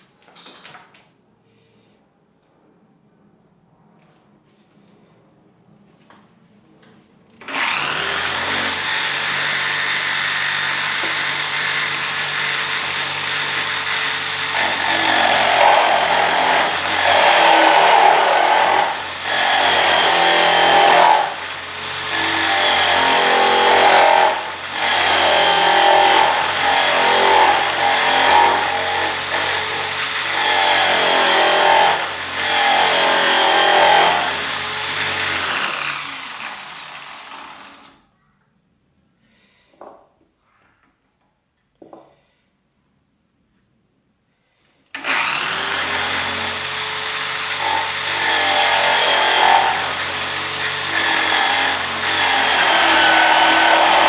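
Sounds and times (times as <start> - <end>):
bench drill running: 7.4 - 38.0, 45.0 - 54.0
cutter scraping wood: 7.5 - 36.3, 45.0 - 54.0.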